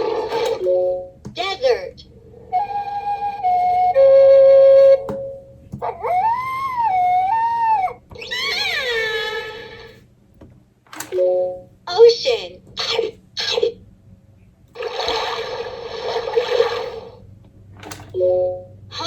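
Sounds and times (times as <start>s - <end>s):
recorded animal howl: 5.8s - 9.6s.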